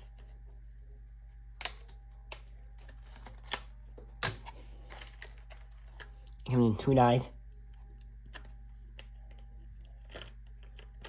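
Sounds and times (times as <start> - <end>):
steady low hum: 0.0 - 11.0
rustling of cards: 1.7 - 7.2.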